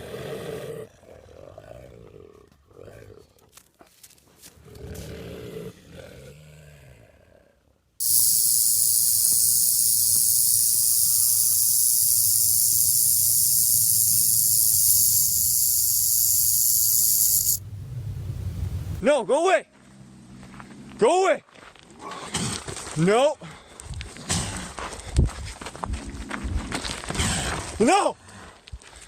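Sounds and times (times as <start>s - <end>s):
faint low growling: 0.0s - 3.4s, 4.6s - 7.8s
loud high-pitched hiss: 8.0s - 17.6s.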